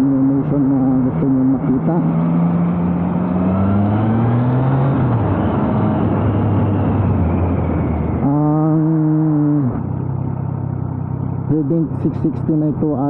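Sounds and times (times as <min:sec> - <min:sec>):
motorcycle engine running: 0:00.0 - 0:13.0
loud steady tone: 0:03.4 - 0:13.0.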